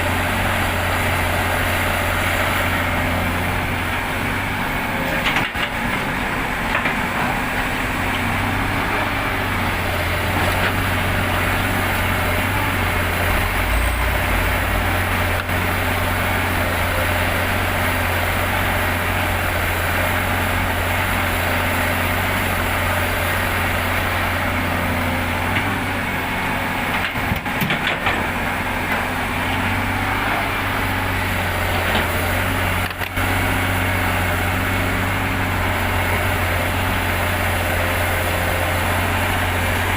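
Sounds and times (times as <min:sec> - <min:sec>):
heavy diesel engines running: 0:00.0 - 0:39.9.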